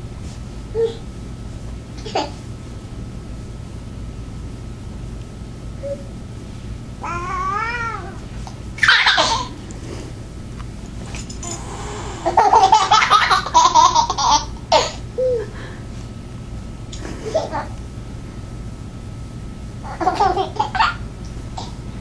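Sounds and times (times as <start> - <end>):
toddler giggling: 11.4 - 15.6.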